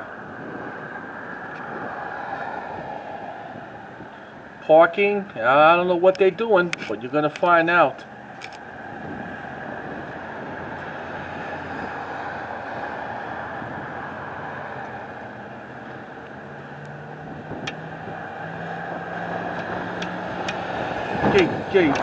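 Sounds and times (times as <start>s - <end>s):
outdoor vehicle noise: 0.0s - 22.0s
low engine hum: 7.9s - 22.0s.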